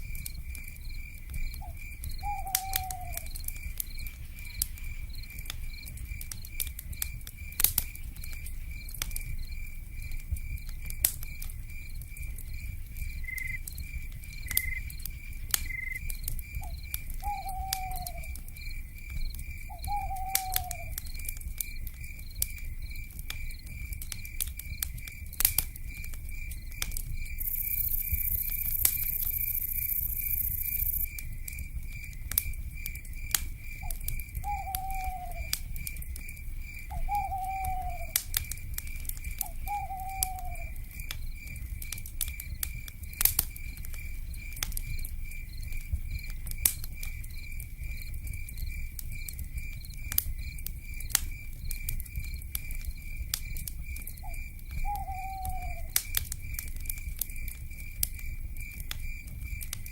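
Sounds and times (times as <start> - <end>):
cricket chirping: 0.0 - 59.9
wood fire crackling and popping: 0.0 - 59.9
owl calls: 1.6 - 3.3, 17.2 - 18.4, 19.7 - 21.0, 33.8 - 35.5, 36.9 - 38.2, 39.4 - 40.7, 54.8 - 56.0.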